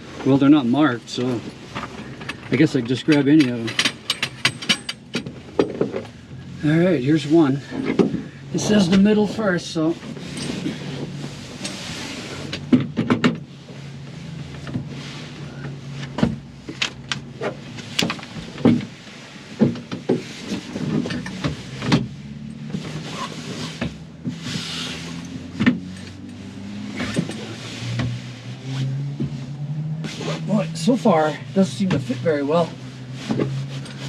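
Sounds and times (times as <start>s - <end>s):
canvas rustling: 8.4s - 12.7s, 13.5s - 34.0s.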